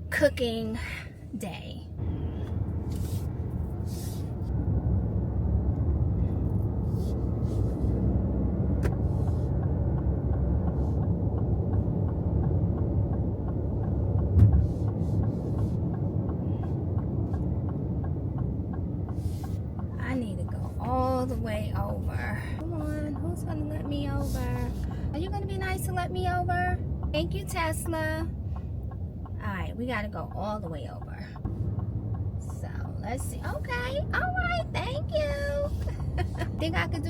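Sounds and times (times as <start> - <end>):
road noise inside car: 0.0 - 37.0
turn signal ticking: 1.9 - 37.0
thump: 14.3 - 14.8.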